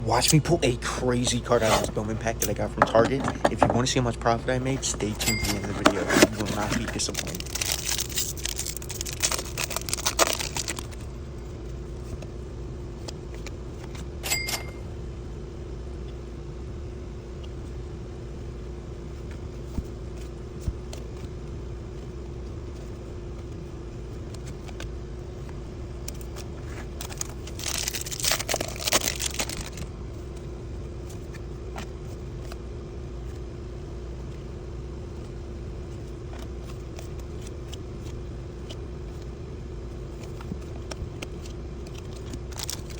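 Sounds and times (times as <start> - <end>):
steady low hum: 0.0 - 42.9
foil wrapper crinkling: 4.8 - 11.2, 26.0 - 30.4, 40.1 - 42.9.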